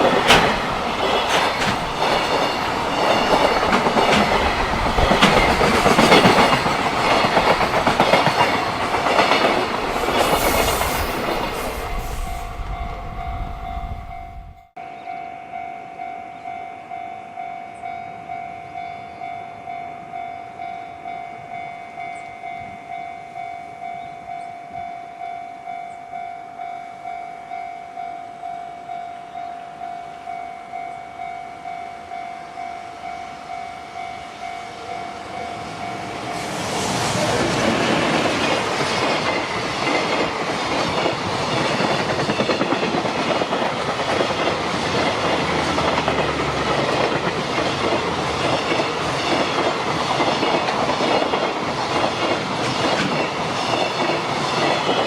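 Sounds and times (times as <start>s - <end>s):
level crossing warning bell: 0.0s - 9.6s, 12.6s - 36.4s
freight train wagons clattering: 0.0s - 14.5s, 34.5s - 55.0s.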